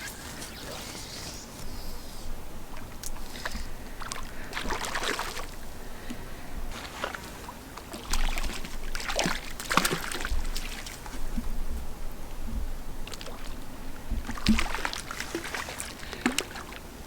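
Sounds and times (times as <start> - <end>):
water splashing and sloshing: 2.7 - 11.6, 13.0 - 16.9.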